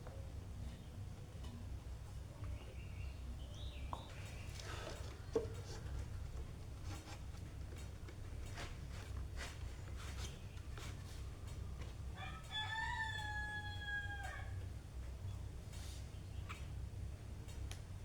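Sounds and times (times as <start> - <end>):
faint taps: 3.9 - 5.8
distant rooster crowing: 11.9 - 14.8.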